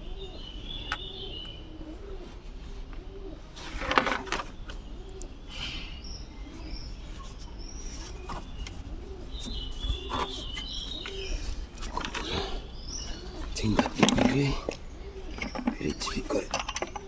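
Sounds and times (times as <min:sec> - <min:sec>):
pigeons cooing: 0:00.0 - 0:17.0
metal tools knocking: 0:15.4 - 0:17.0.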